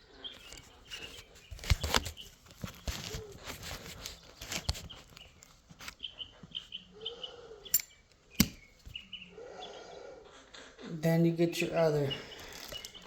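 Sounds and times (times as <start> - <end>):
pet bird chirps: 0.0 - 10.2, 11.6 - 13.0
tools and small parts clattering: 0.4 - 6.0, 7.6 - 9.0, 12.4 - 13.0.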